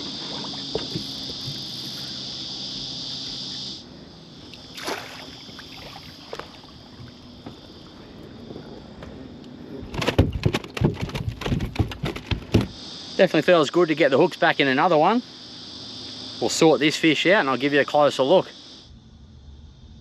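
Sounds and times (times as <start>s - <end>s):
high insect chorus: 0.0s - 20.0s
knocks and clicks: 9.9s - 12.8s
loud thumps and knocks: 9.9s - 12.8s.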